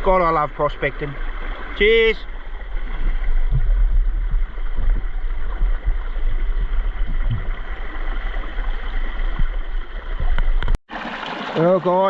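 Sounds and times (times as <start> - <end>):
creek water running: 0.0 - 12.0
wind buffeting microphone: 2.6 - 10.8
soft low thumps: 3.2 - 10.8.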